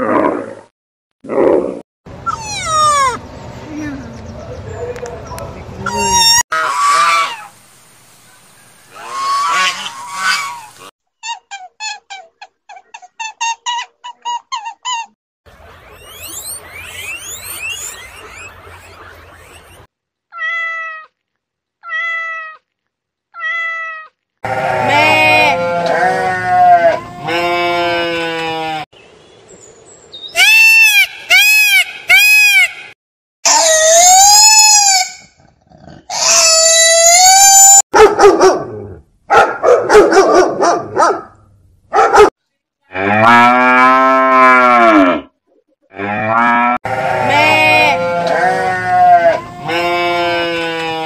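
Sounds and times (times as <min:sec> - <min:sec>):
animal calling: 0:02.2 - 0:03.2, 0:05.8 - 0:07.5, 0:08.9 - 0:21.1.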